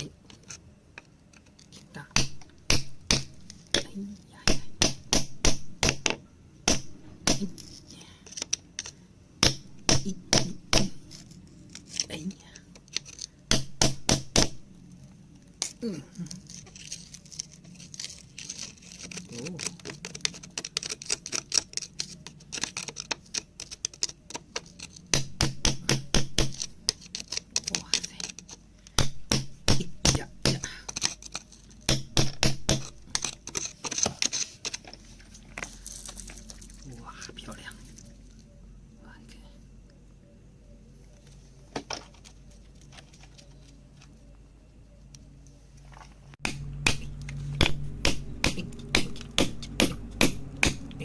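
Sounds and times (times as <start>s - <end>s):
steady low hum: 0.0s - 51.0s
hard objects clicking and tapping: 17.6s - 36.8s, 46.4s - 51.0s
sharp knocks: 46.4s - 51.0s.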